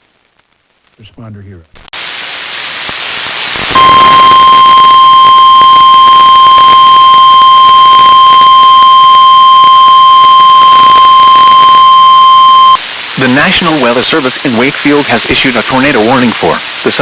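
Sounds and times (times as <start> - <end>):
radio static hiss: 1.8 - 6.8, 12.6 - 17.0.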